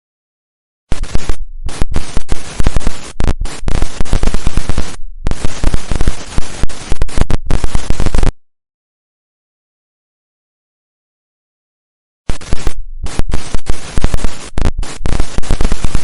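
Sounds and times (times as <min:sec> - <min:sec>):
static hiss bursts: 0:00.9 - 0:08.3, 0:12.3 - 0:16.0.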